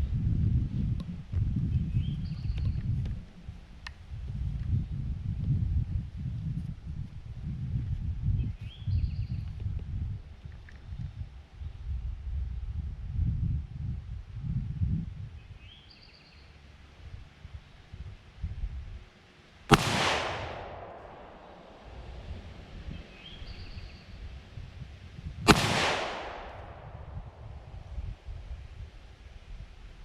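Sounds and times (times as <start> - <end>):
rifle shots with rolling echo: 19.7 - 23.8, 25.5 - 27.9.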